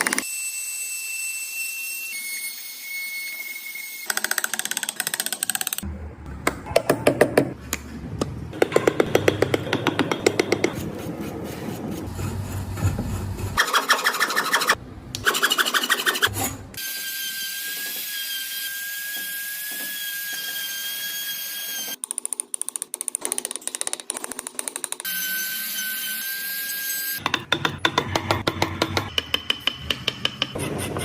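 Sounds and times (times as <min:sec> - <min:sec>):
hand tools rasping wood: 0:08.8 - 0:16.3.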